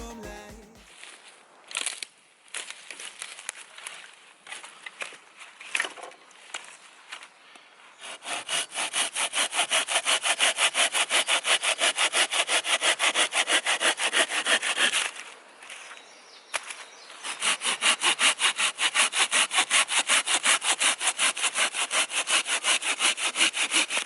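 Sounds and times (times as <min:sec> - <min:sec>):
hand saw cutting wood: 0:07.9 - 0:15.9, 0:16.6 - 0:24.0.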